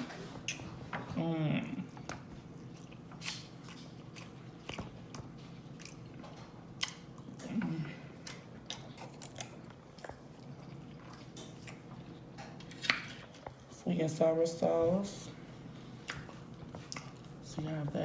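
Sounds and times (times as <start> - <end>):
person chewing food loudly: 1.7 - 13.7, 15.6 - 17.6.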